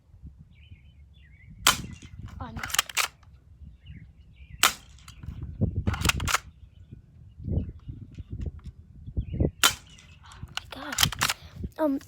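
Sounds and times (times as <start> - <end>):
sharp pistol clicks: 1.6 - 3.3, 4.6 - 6.6, 9.6 - 11.5.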